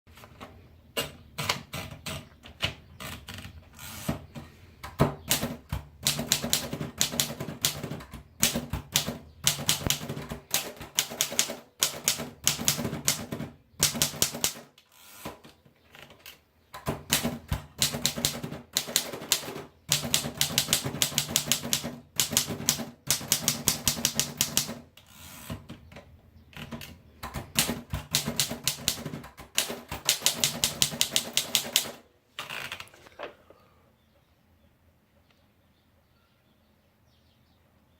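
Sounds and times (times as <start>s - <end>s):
typewriter keys clacking: 27.5s - 32.0s.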